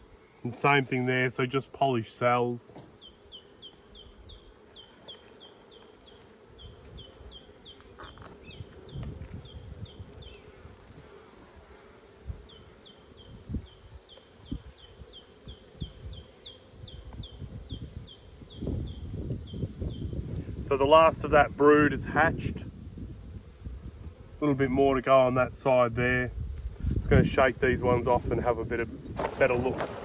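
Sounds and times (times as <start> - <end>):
bees buzzing: 0.0 - 30.0.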